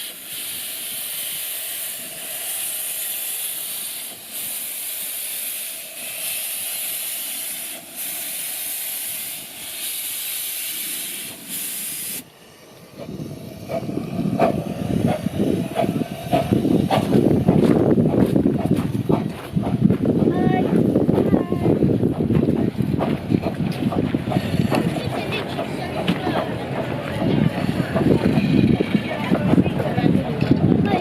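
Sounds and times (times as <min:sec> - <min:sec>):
steam locomotive hissing: 0:00.0 - 0:31.0
clattering rumble with knocks: 0:13.0 - 0:31.0.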